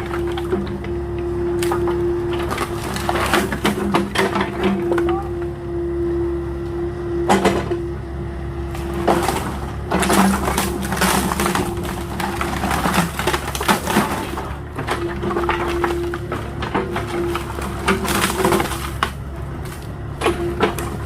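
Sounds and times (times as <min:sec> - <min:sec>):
excavator engine running: 0:00.0 - 0:21.0
wooden pallets cracking: 0:01.6 - 0:05.2, 0:08.7 - 0:21.0.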